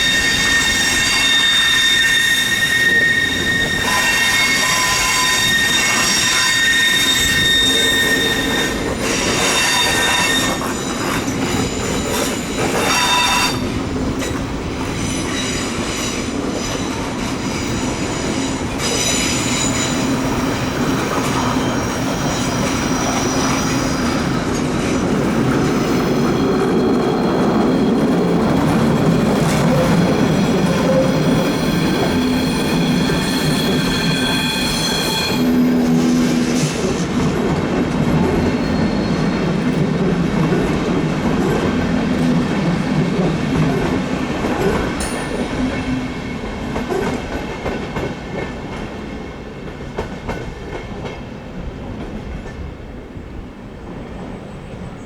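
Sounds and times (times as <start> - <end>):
train wheels squealing: 0.0 - 37.1, 38.3 - 40.0, 44.6 - 48.5
train rumble: 2.7 - 55.0.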